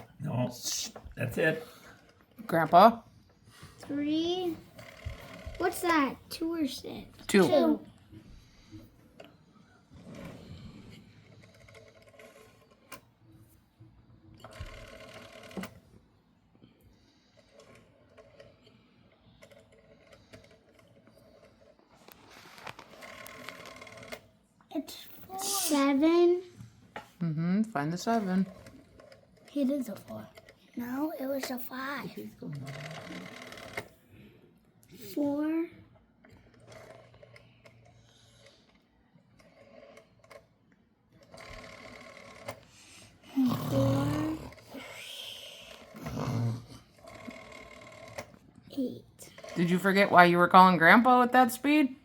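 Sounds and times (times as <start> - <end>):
rotary telephone dial whirring: 3.8 - 13.6, 14.2 - 16.0, 17.1 - 24.4, 28.0 - 34.0, 35.9 - 51.7
rotary telephone dial clicking: 22.8 - 24.3, 32.7 - 33.9.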